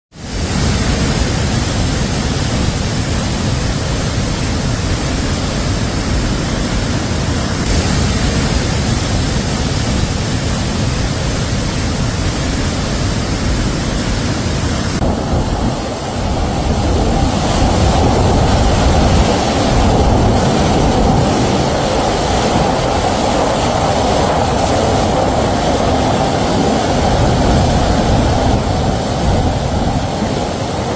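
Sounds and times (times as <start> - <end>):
floodwater rushing: 0.1 - 30.9.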